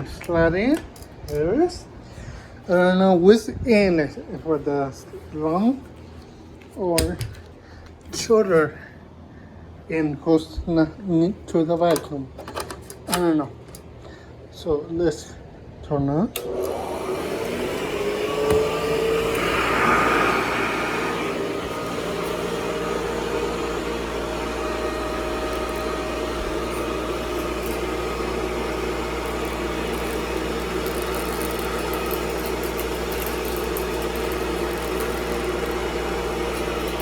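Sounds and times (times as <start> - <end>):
vacuum cleaner running: 16.4 - 37.0.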